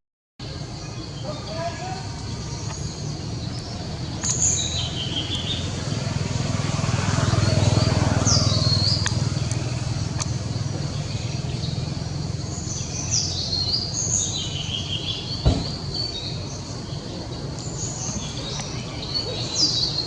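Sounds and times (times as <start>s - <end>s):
birds chirping: 0.4s - 20.0s
thump: 15.4s - 15.9s.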